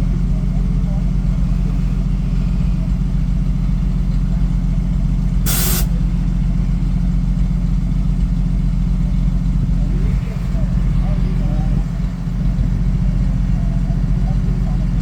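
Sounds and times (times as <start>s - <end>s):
vehicle engine droning: 0.0s - 15.0s
short burst of hiss: 5.5s - 5.9s.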